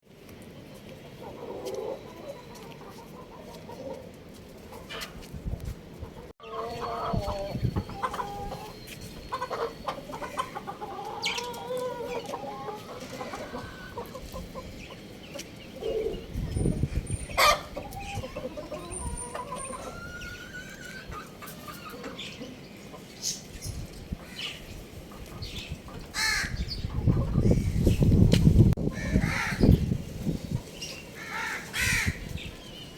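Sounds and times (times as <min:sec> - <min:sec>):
rooster clucking and chirping: 0:06.0 - 0:23.8, 0:24.5 - 0:28.2.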